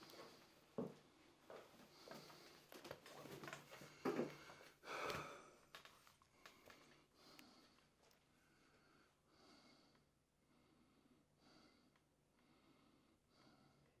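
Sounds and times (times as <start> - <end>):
soft breath-like sounds: 3.7 - 14.0.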